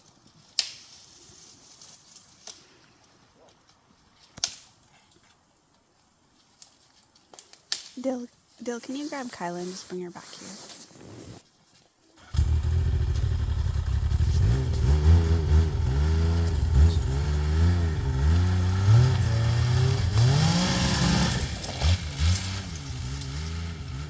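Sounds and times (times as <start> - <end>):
snowmobile engine revving: 12.2 - 24.0.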